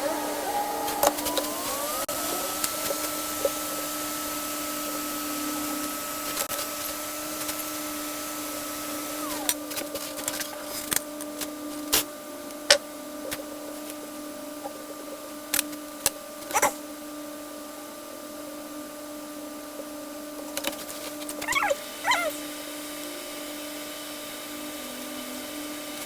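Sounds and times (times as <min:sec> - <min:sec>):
electric blower hum and whine: 0:00.0 - 0:11.4, 0:18.4 - 0:26.0.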